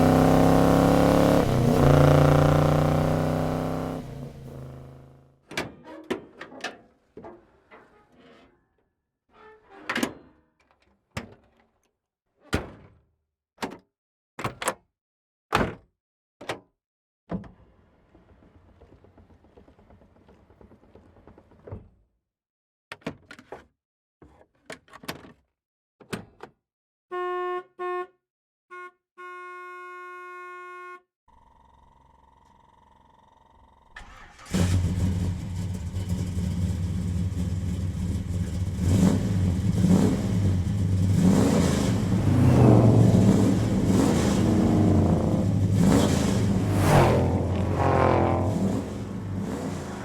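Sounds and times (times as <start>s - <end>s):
car horn honking: 27.1s - 31.1s.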